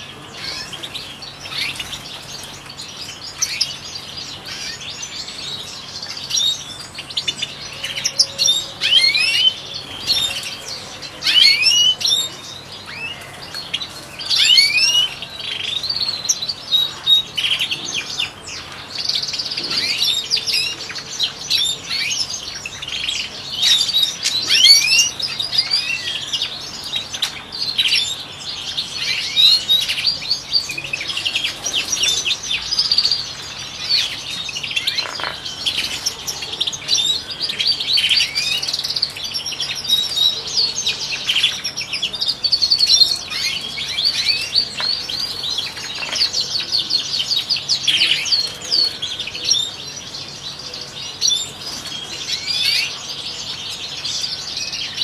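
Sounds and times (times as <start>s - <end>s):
finches twittering and singing: 0.0s - 55.0s.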